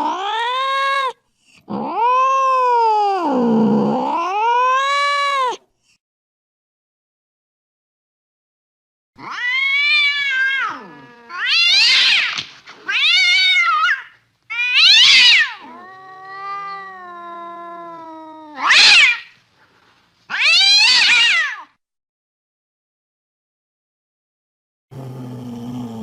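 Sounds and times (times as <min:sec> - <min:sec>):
cat meowing: 0:00.0 - 0:05.6, 0:09.2 - 0:19.4, 0:20.3 - 0:21.7.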